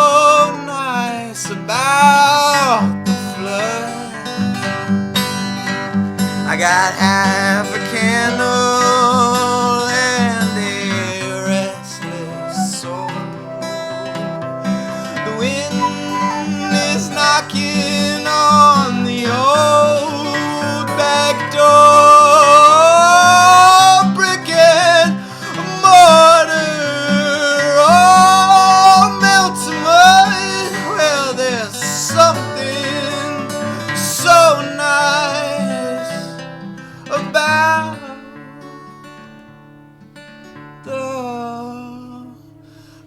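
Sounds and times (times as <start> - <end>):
acoustic guitar strumming and plucking: 0.0 - 43.0
person singing long sliding notes: 3.4 - 4.4, 10.8 - 36.4.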